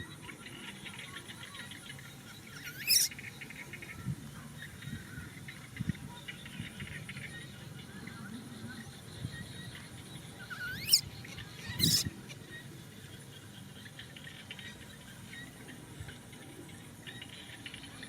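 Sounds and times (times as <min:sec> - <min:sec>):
faint bird chirps: 0:00.0 - 0:05.4, 0:07.3 - 0:13.9
faint insect chirps: 0:02.0 - 0:03.6, 0:08.5 - 0:13.0
baby monkey squealing: 0:02.5 - 0:03.2, 0:10.4 - 0:12.1.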